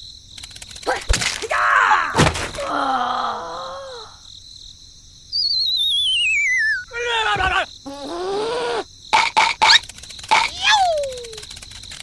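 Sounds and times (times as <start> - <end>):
groaning voice: 0.9 - 4.2, 6.9 - 8.9
sharp thuds: 2.1 - 2.7
high whistle gliding down: 5.4 - 6.9.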